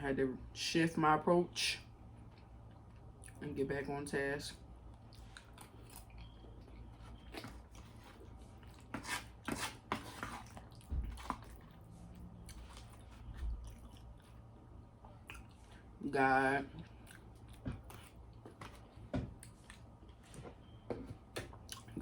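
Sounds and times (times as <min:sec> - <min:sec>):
person chewing: 0:04.8 - 0:16.0, 0:16.7 - 0:20.4, 0:21.4 - 0:22.0.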